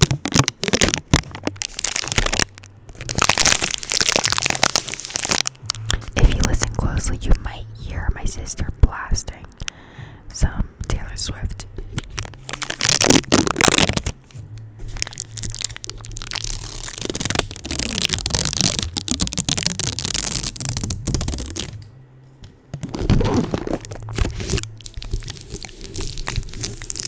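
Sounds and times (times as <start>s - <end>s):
adhesive tape crackling and tearing: 0.0s - 6.6s, 11.9s - 21.9s, 22.8s - 27.0s.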